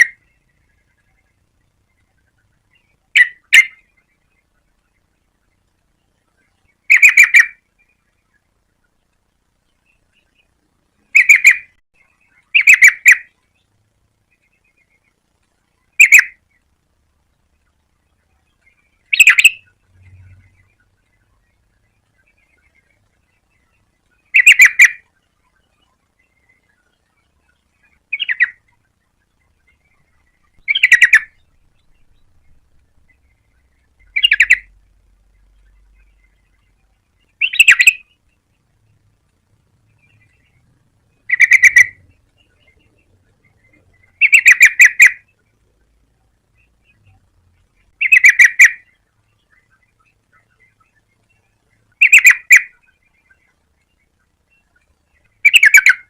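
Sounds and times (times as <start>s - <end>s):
bulbul calling: 0.0s - 39.1s, 39.8s - 56.0s.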